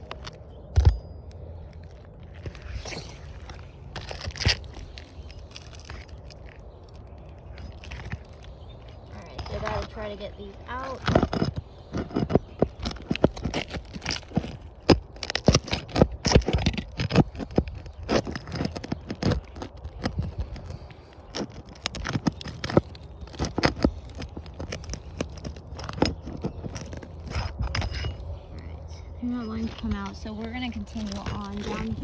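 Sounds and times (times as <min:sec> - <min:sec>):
metal tool scraping shingles: 0:09.4 - 0:28.4.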